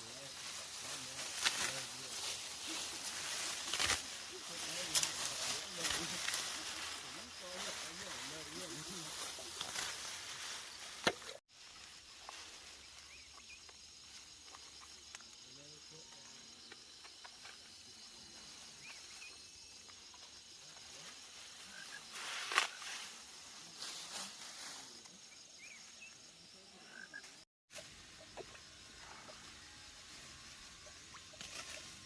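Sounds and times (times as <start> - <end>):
insect chirring: 0.0 - 23.7.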